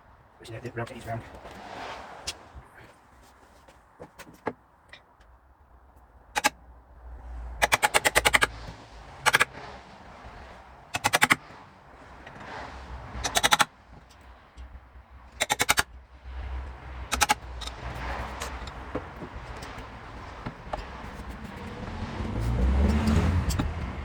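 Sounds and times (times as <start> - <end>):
hammer tapping wood chisel: 7.6 - 8.5, 11.0 - 11.4, 13.2 - 13.7, 15.4 - 15.9, 17.1 - 21.8.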